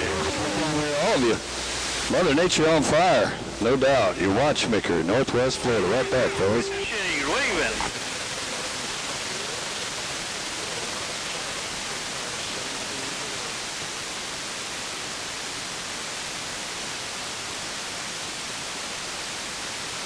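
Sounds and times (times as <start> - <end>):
faint wavering radio signal: 0.0 - 14.8
radio static hiss: 0.0 - 18.2.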